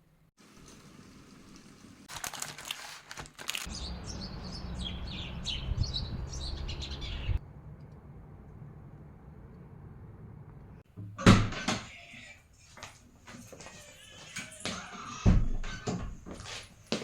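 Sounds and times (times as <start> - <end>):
small birds chirping: 3.7 - 7.4
low outdoor rumble: 3.8 - 10.8.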